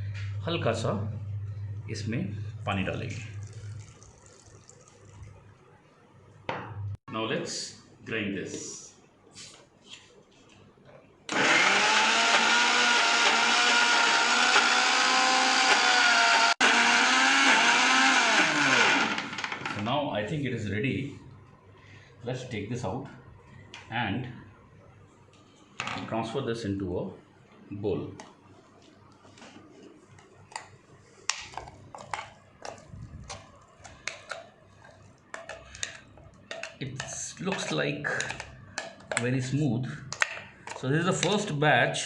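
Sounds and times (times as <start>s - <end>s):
mixer grinder motor whining: 11.3s - 19.8s.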